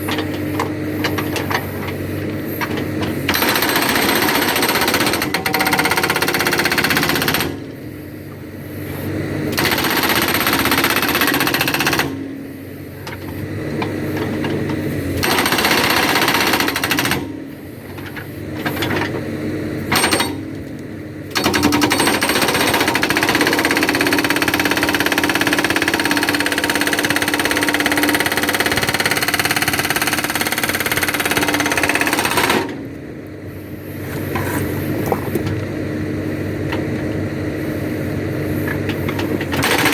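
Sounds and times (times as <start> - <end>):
hydraulic rock breaker hammering: 0.0 - 7.8, 9.5 - 12.3, 13.1 - 19.2, 19.8 - 20.7, 21.3 - 32.8, 38.7 - 39.9
backhoe engine running: 0.0 - 39.9.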